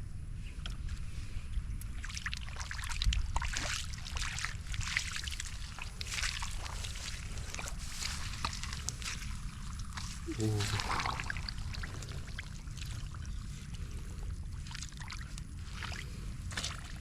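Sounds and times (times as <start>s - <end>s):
floodwater sloshing and splashing: 1.8s - 17.0s
low rumble: 4.1s - 17.0s.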